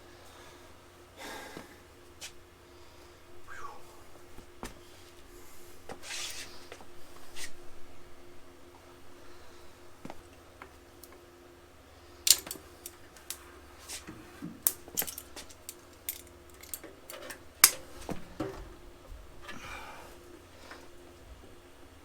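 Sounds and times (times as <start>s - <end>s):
sharp metallic clicks and clinks: 12.3s - 13.4s, 14.7s - 17.8s.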